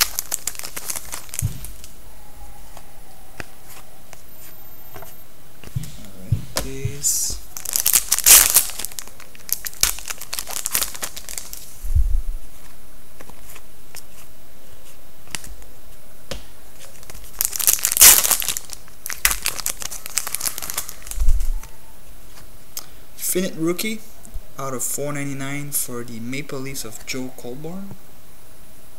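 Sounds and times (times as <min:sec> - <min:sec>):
card wrappers tearing and crinkling: 0:00.0 - 0:01.9, 0:07.5 - 0:11.8, 0:16.8 - 0:21.5
dull thumps: 0:01.3 - 0:01.8, 0:04.9 - 0:07.2.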